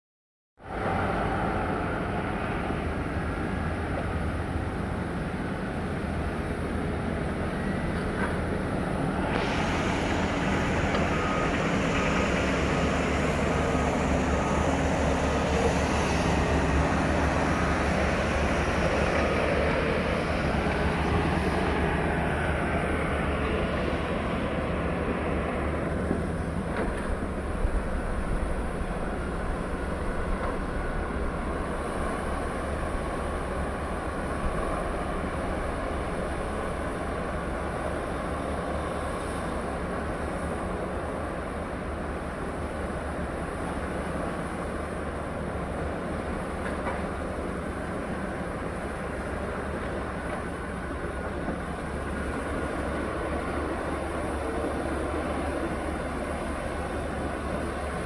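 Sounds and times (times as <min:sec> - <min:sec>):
excavator diesel engine running: 0:00.7 - 0:58.0.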